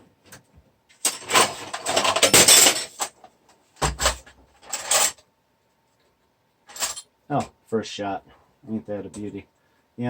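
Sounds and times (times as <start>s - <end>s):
hard parts rattling and scraping: 1.0s - 5.2s, 6.7s - 7.1s.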